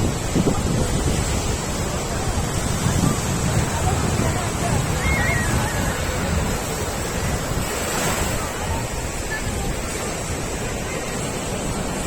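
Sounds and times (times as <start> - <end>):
ocean waves breaking on beach: 0.0 - 12.0.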